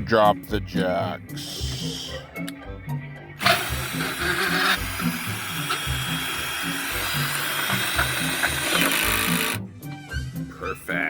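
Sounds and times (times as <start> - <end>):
background music with beat: 0.0 - 11.0
power drill running: 3.4 - 9.6.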